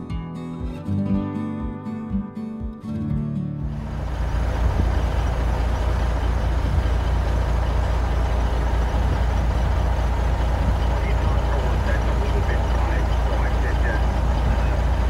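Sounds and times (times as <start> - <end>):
heavy vehicle running: 3.6 - 15.0.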